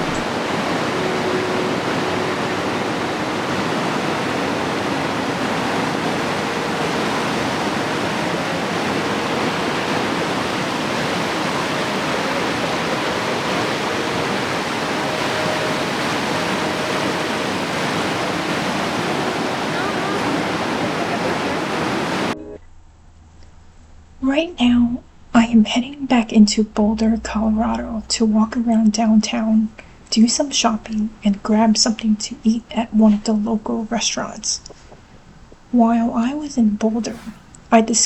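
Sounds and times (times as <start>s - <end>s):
river water flowing: 0.0s - 22.4s, 32.2s - 38.0s.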